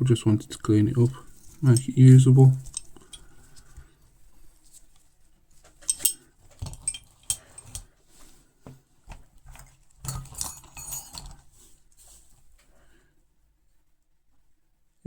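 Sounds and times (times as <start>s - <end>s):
metal hand tools clinking: 1.0s - 3.4s, 5.8s - 7.9s, 10.0s - 11.4s.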